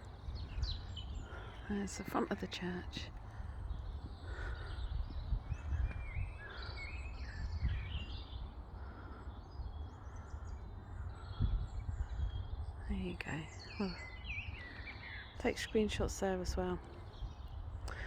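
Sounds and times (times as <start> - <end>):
small birds chirping: 0.0 - 18.0
wind rumble on microphone: 0.0 - 18.0.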